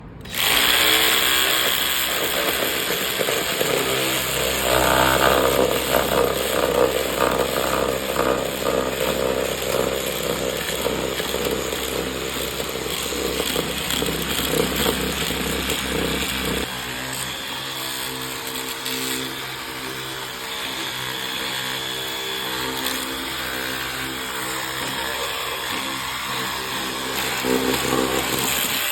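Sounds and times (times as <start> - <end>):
saw cutting wood: 0.2 - 28.9
steady humming tone: 1.2 - 16.7.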